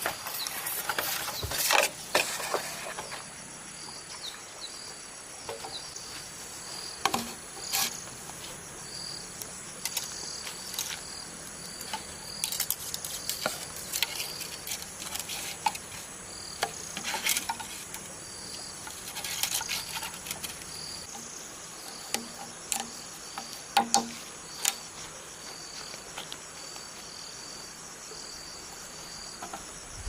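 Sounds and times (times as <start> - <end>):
insects chirping: 0.0 - 30.0
sharp clicks and knocks: 22.1 - 24.8.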